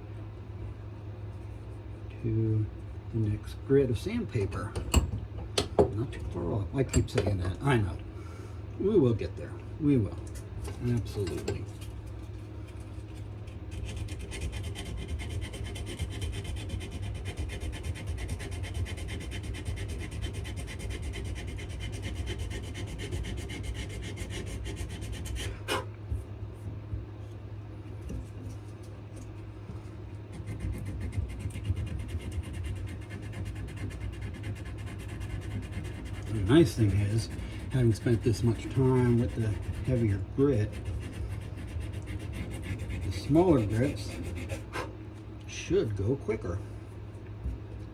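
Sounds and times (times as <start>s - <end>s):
sandpaper sanding wood: 13.7s - 25.6s, 30.3s - 44.9s.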